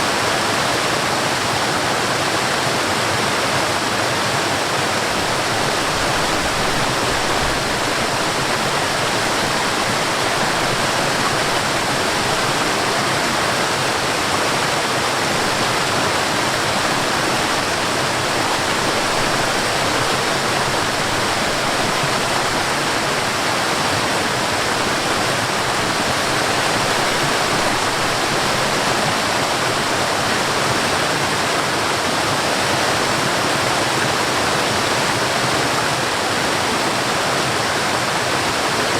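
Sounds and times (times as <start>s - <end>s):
water rushing from waterfall: 0.0s - 38.9s.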